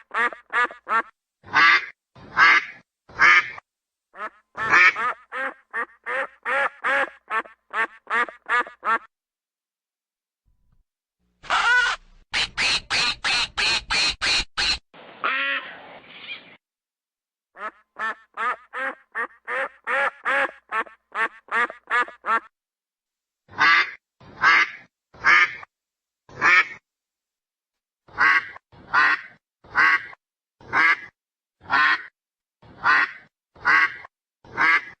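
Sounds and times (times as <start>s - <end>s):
ducks quacking: 0.0s - 3.6s, 4.2s - 9.1s, 11.5s - 16.0s, 28.1s - 32.1s, 32.7s - 35.0s.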